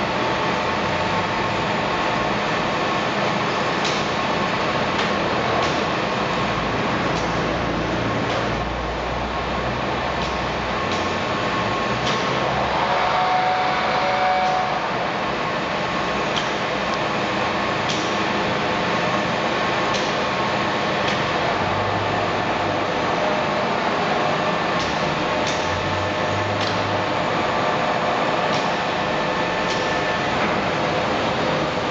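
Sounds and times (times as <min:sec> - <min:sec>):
lathe whine: 0:10.7 - 0:25.4.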